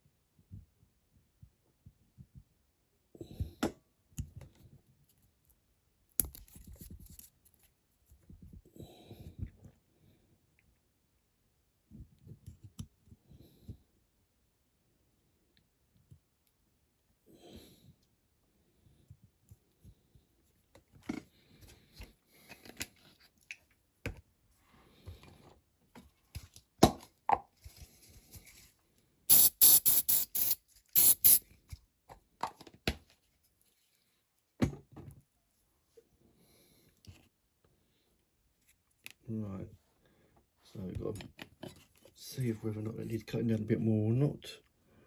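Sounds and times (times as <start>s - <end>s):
small handling clicks and scrapes: 6.2s - 8.6s, 29.3s - 31.4s
loud scissor snips: 29.3s - 31.4s.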